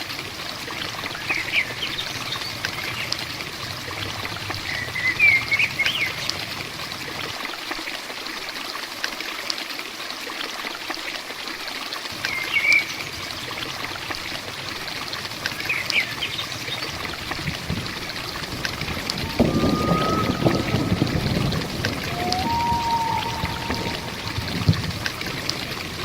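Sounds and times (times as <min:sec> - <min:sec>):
heavy rainfall: 0:00.0 - 0:26.0
bird chirping: 0:18.9 - 0:24.9.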